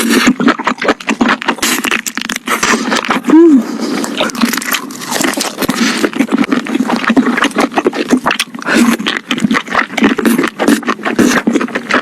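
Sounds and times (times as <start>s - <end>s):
chewing crispy fried chicken: 0.0s - 12.0s.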